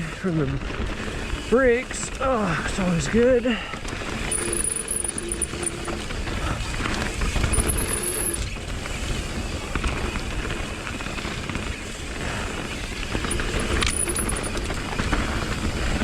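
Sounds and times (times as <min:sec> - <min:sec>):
bike tyres rattling over rough ground: 0:00.1 - 0:16.0
disc brakes squealing: 0:04.2 - 0:06.1, 0:07.4 - 0:08.6, 0:13.1 - 0:14.6.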